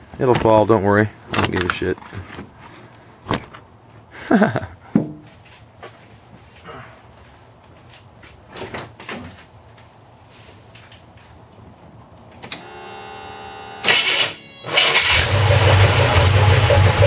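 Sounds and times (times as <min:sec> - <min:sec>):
engine starting and running: 0:12.4 - 0:17.0
steady whine: 0:12.5 - 0:17.0
engine cranking: 0:13.8 - 0:17.0.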